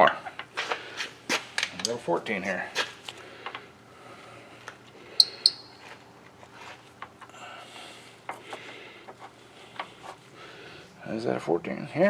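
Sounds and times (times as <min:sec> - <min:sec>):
hand tools clicking and rubbing: 0:05.2 - 0:06.0.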